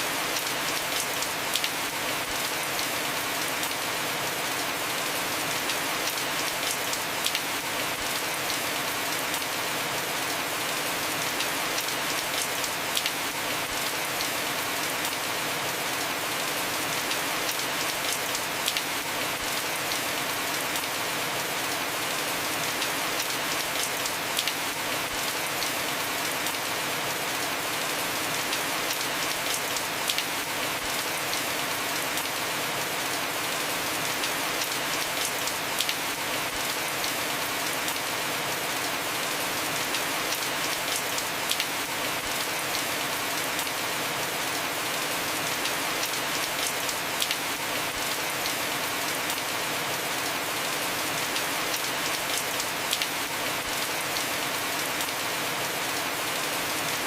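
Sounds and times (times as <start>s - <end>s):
heavy rain on a roof: 0.0s - 57.0s.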